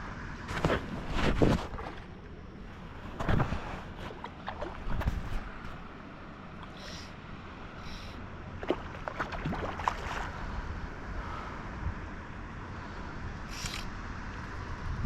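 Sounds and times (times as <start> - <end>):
wind: 0.0 - 15.0
small clicks and scrapes: 13.5 - 13.9.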